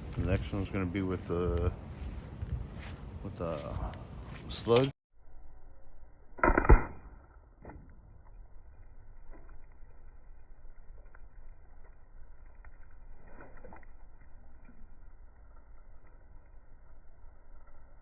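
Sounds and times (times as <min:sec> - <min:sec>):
air rifle shot: 0:06.4 - 0:07.3.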